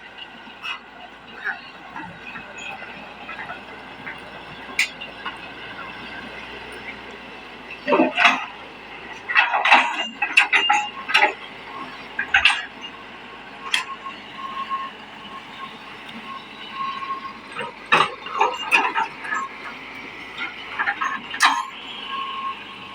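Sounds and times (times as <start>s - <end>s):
excavator whine: 0.0s - 22.9s
sharp metallic clanks: 20.8s - 21.9s.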